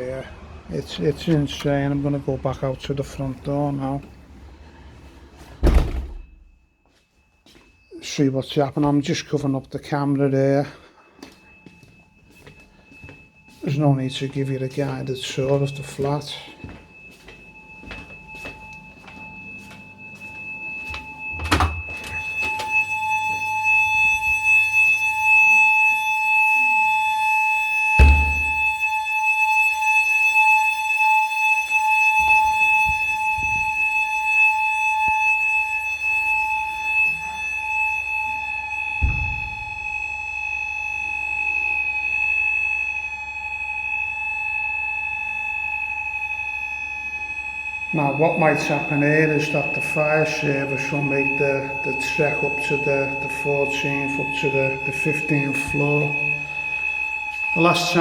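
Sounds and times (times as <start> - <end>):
fire alarm electronic tone: 0.0 - 4.7, 5.6 - 58.0
door opening with a knock: 5.6 - 6.4, 28.0 - 28.8
footsteps: 6.8 - 7.8, 11.2 - 21.1.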